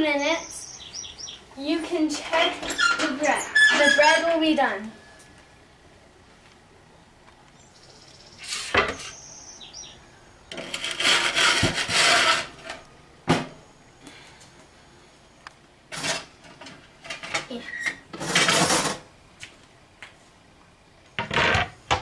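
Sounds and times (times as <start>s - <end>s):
rustling scrape: 8.4s - 9.2s, 10.5s - 12.8s, 18.2s - 19.1s.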